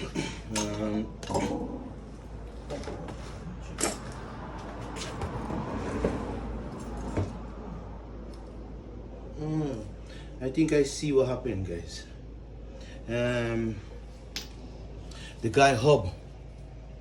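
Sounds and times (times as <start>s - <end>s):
metal parts knocking and clinking: 0.5s - 1.4s.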